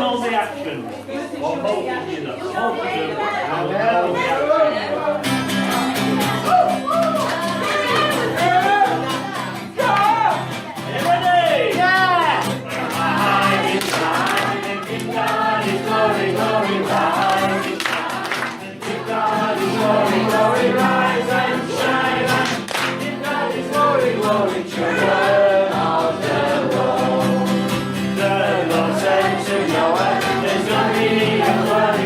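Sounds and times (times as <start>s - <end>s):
crowd singing: 7.3s - 9.9s, 12.0s - 32.0s.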